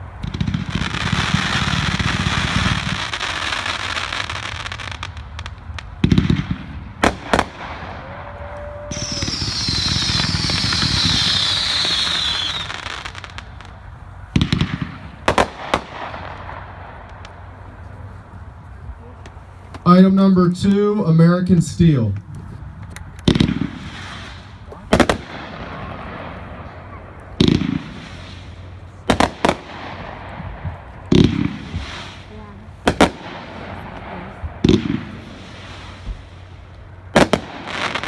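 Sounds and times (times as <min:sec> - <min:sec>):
firework crackling: 0:00.0 - 0:19.9, 0:21.8 - 0:38.0
firework sharp reports: 0:00.0 - 0:38.0
falling high whistle: 0:08.0 - 0:12.9.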